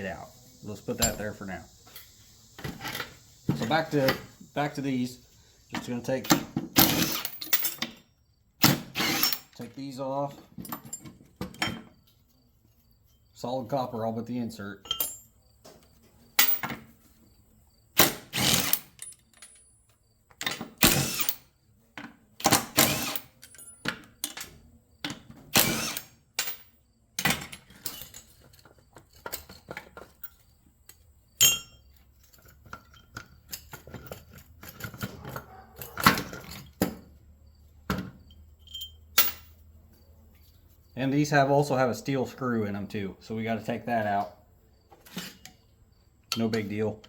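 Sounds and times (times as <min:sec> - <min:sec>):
power driver whirring in bursts: 0:08.8 - 0:09.4, 0:20.8 - 0:21.4, 0:22.6 - 0:23.3, 0:25.5 - 0:26.1
light metal clatter: 0:38.0 - 0:39.6.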